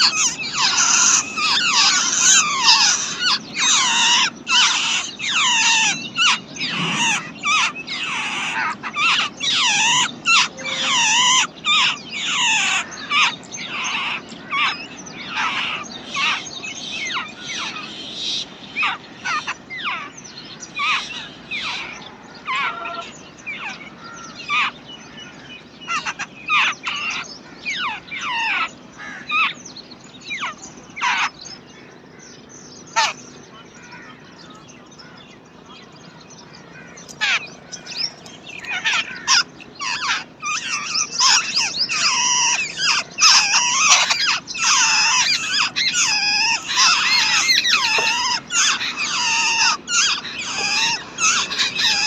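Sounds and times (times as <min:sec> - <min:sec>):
nestlings chirping: 0:00.0 - 0:08.7, 0:36.4 - 0:52.0.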